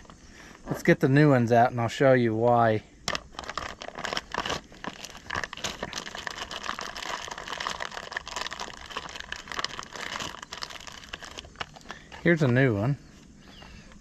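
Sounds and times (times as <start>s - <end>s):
packaging crinkling and rustling: 3.0s - 12.6s.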